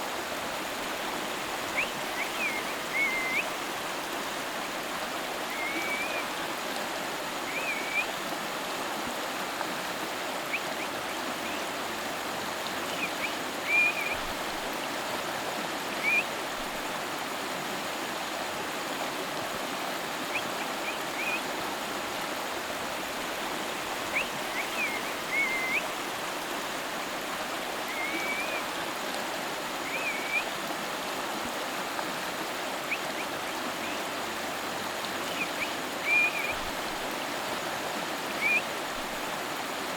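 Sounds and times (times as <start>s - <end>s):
river water flowing: 0.0s - 39.9s
bird chirping: 24.1s - 25.8s, 35.3s - 36.6s.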